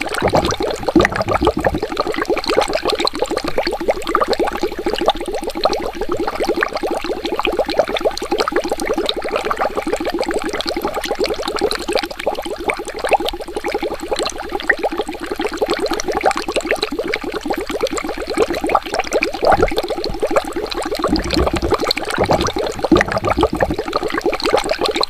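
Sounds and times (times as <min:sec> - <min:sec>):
water bubbling: 0:00.1 - 0:02.4, 0:19.4 - 0:25.0.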